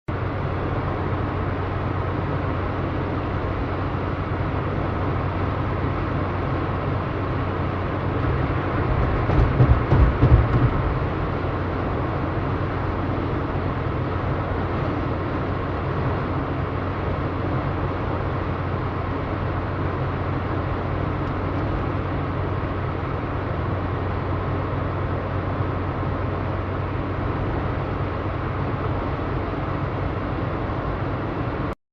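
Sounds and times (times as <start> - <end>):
car engine and road rumble: 0.1 - 31.8
low thumps: 8.2 - 11.5.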